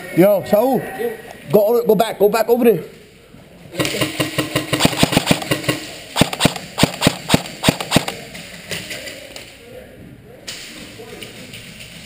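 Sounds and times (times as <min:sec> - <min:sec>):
airsoft gun shots: 0:04.2 - 0:08.2.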